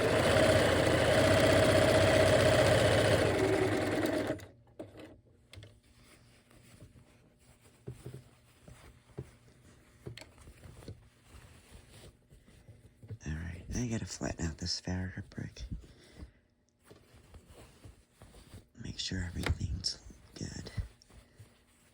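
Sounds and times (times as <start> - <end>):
sewing machine stitching: 0.0 - 5.2
faint clicks and rustles: 4.8 - 13.7, 15.3 - 21.9.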